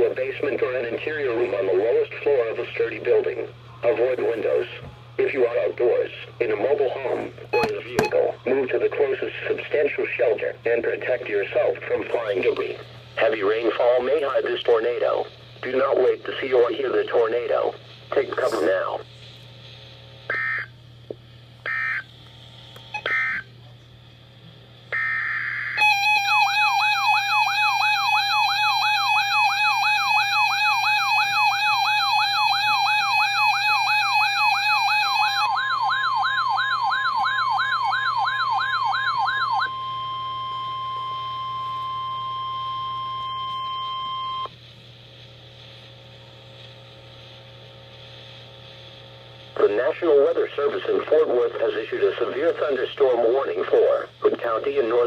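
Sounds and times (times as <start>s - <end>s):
warbling siren-like alert tone: 23.0s - 23.4s, 24.9s - 44.4s.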